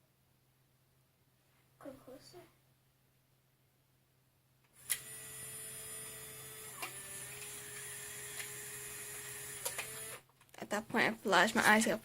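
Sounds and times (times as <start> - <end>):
camera motor whining: 4.8 - 10.3.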